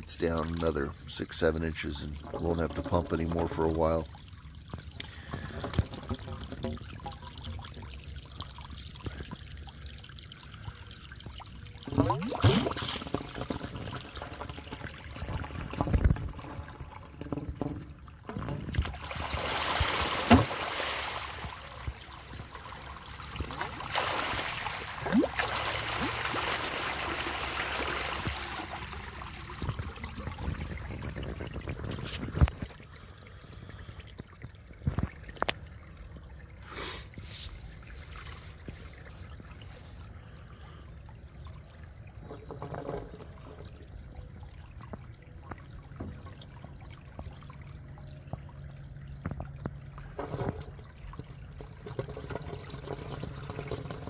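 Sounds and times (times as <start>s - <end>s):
water pouring onto ground: 1.9s - 17.3s, 18.7s - 33.0s.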